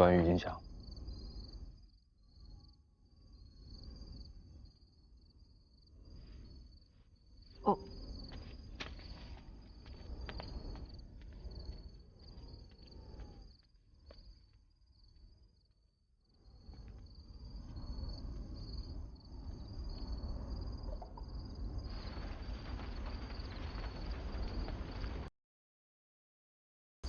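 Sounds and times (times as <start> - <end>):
insects chirping: 0.0 - 25.3.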